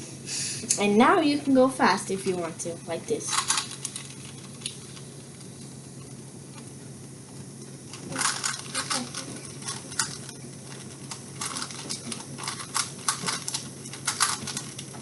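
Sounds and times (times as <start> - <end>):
low steady hum: 0.0 - 15.0
puzzle cube plastic clicking: 11.1 - 14.9.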